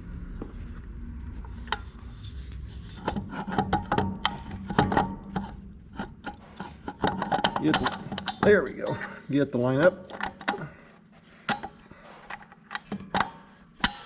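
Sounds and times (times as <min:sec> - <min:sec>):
metal clinks and scraping: 0:01.6 - 0:10.8.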